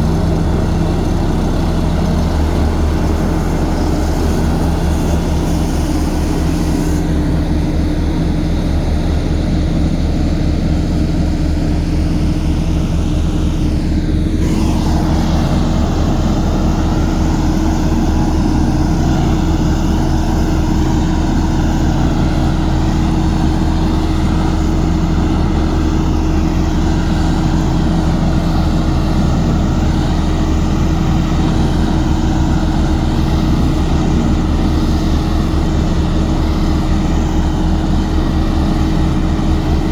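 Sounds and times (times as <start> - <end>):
falling whine: 0.0 - 7.5, 14.2 - 39.9
heavy machine engine droning: 0.0 - 39.9.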